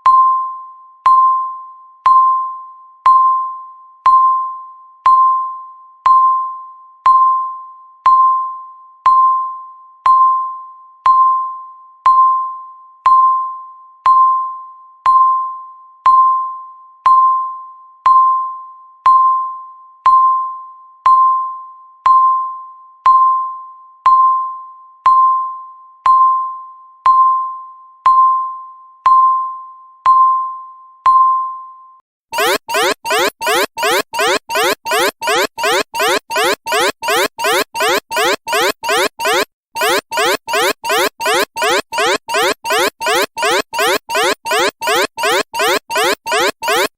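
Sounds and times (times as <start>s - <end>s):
timer beeps: 32.4s - 46.9s.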